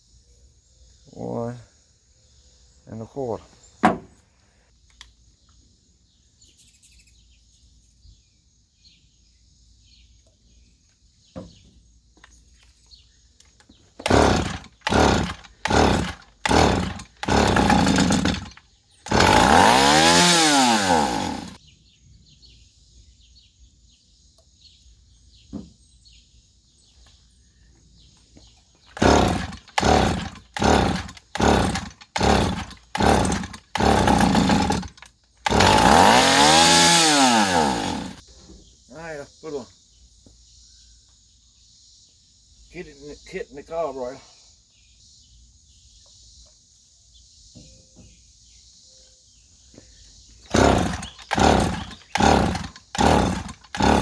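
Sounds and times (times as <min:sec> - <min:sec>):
chainsaw engine revving: 0:14.0 - 0:21.6, 0:28.9 - 0:38.2, 0:50.5 - 0:54.0.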